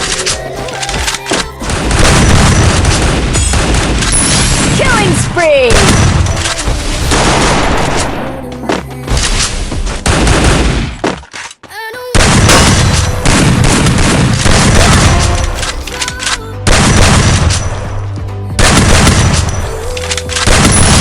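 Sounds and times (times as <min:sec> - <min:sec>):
background music: 0:00.0 - 0:04.2, 0:04.8 - 0:10.6, 0:11.7 - 0:21.0
video game gunfire: 0:00.0 - 0:08.4, 0:09.1 - 0:11.2, 0:12.2 - 0:15.8, 0:16.6 - 0:17.7, 0:18.6 - 0:19.8, 0:20.4 - 0:21.0
explosion booms: 0:01.7 - 0:08.2, 0:12.2 - 0:15.4, 0:16.7 - 0:17.9.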